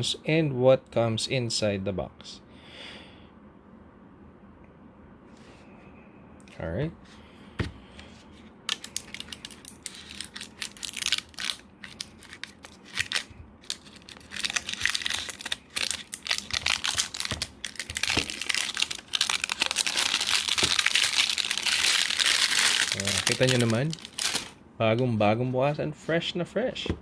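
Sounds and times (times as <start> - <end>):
plastic wrap crinkling: 8.7 - 24.6.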